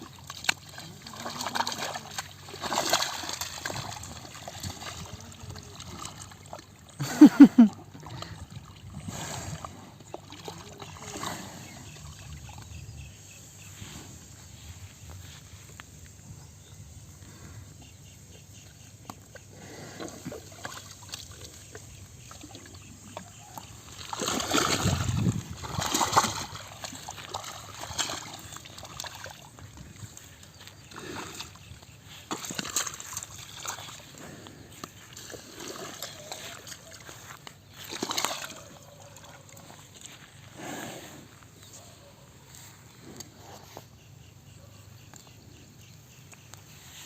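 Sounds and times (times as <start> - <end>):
water splashing and sloshing: 0.0 - 12.8, 18.9 - 40.6.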